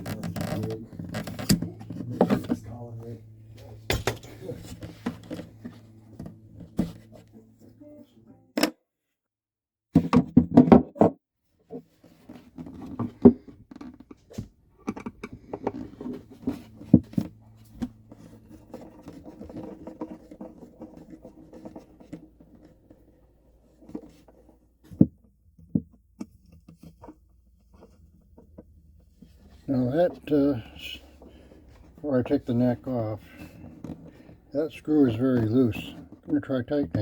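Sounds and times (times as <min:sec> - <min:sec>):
faint steady hum: 0:00.0 - 0:08.5, 0:14.5 - 0:21.9.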